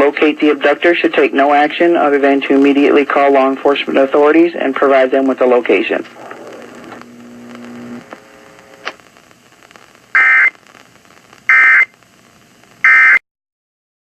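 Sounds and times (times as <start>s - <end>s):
faint radio hiss: 0.0s - 13.2s
low hum: 5.9s - 9.6s
buzzy two-tone digital data bursts: 10.1s - 10.5s.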